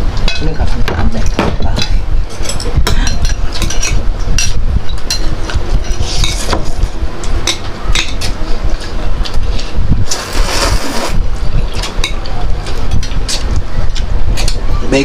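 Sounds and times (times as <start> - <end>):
steady low rumble: 0.0 - 15.0
cutlery clinking against a bowl: 1.3 - 6.6.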